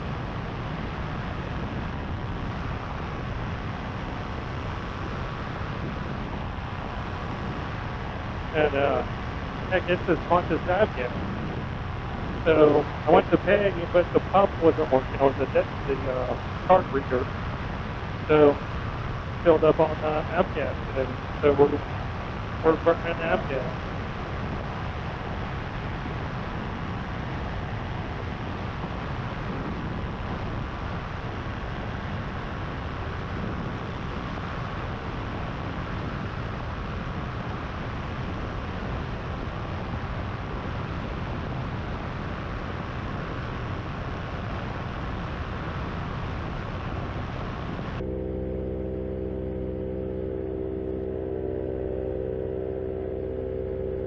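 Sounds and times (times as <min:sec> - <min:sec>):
wind on microphone: 0:00.0 - 0:54.0
paramotor engine running: 0:47.6 - 0:54.0.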